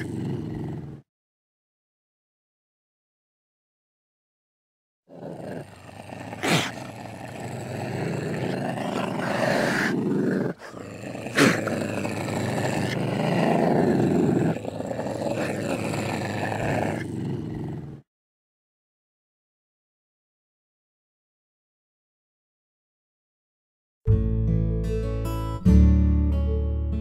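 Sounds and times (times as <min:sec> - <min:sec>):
wild cat growling: 0:00.0 - 0:01.0, 0:05.1 - 0:18.0.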